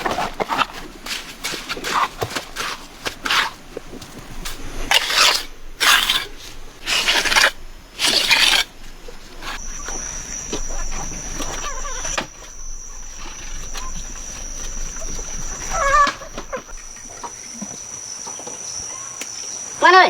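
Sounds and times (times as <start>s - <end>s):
rough scraping strokes: 4.4s - 17.4s
steady high tone: 9.6s - 17.6s.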